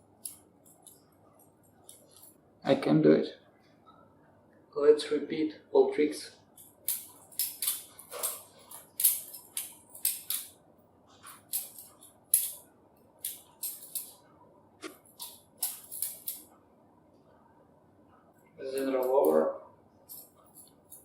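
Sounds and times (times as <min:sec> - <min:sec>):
butterfly knife clacking: 0:06.6 - 0:10.5, 0:11.3 - 0:12.6, 0:13.2 - 0:14.2, 0:15.2 - 0:16.5.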